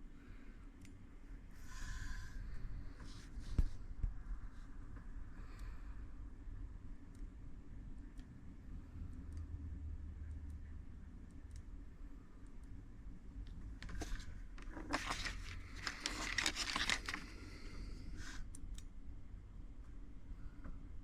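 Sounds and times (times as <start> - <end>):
steady low hum: 0.0 - 21.0
crinkling rustling handling noise: 13.8 - 17.6.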